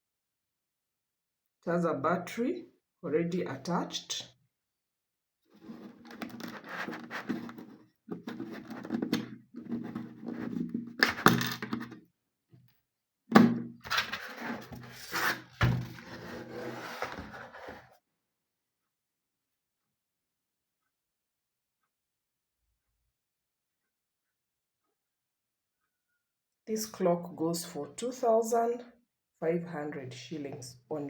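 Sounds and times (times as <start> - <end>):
clock and packaging scraping: 5.6 - 11.9, 13.9 - 18.0.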